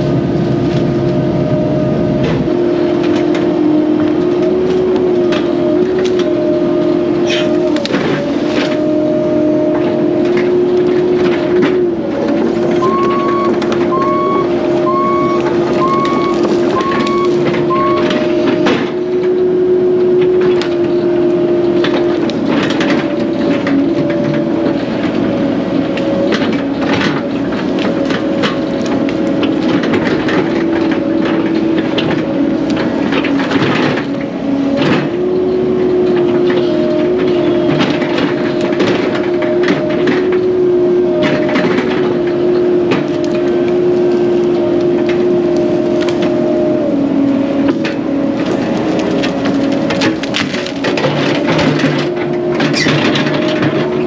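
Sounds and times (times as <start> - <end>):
heavy machinery engine running: 0.0 - 54.0
reverse alarm beeping: 12.8 - 18.6
cracks and knocks: 47.7 - 54.0.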